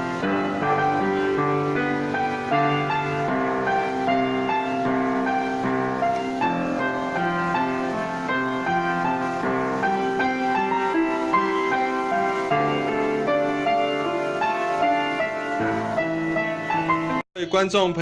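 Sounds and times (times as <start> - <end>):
piano piece: 0.0 - 18.0.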